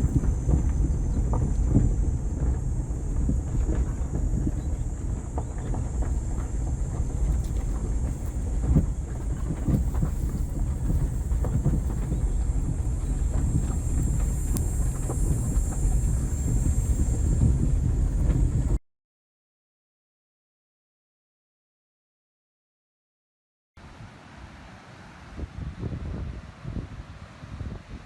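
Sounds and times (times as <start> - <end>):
low rumbling noise: 0.0 - 18.8
wind buffeting microphone: 0.0 - 18.8, 25.2 - 28.0.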